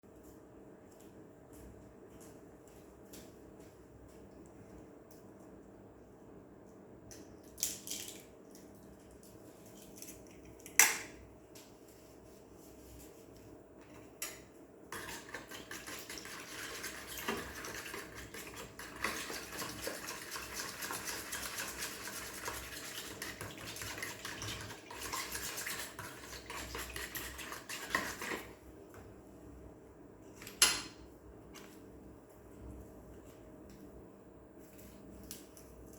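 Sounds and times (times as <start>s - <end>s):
metal stirring scraping bowl: 14.9s - 28.6s.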